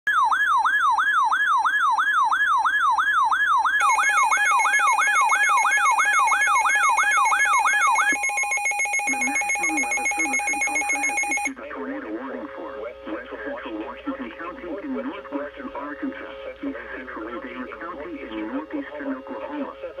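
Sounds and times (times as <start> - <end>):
electronic siren yelping: 0.1 - 11.6
steady electronic alert tone: 3.8 - 11.5.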